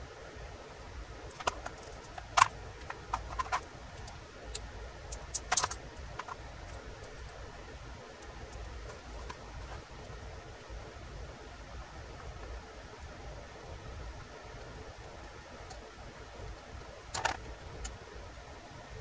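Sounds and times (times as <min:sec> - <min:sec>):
metal parts clicking and tapping: 0:01.3 - 0:07.4, 0:17.1 - 0:17.4.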